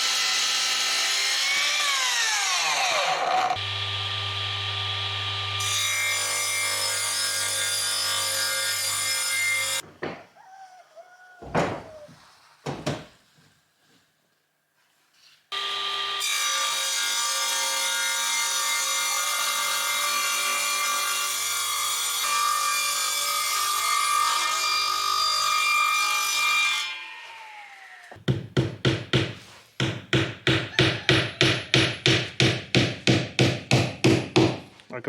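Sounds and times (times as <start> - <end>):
hand saw cutting wood: 0.0 - 3.6.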